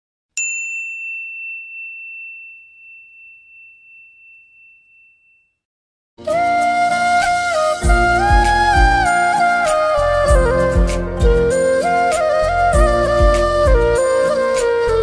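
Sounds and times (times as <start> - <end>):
high bell chime: 0.4 - 5.6
flute tune: 6.2 - 15.0.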